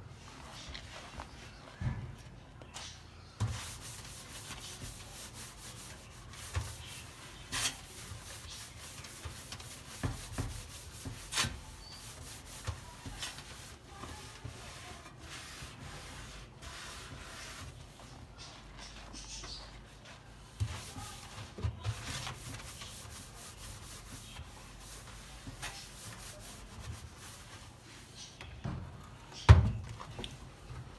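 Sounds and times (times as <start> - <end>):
scratchy scrubbing by hand: 3.4 - 18.0, 20.5 - 27.8.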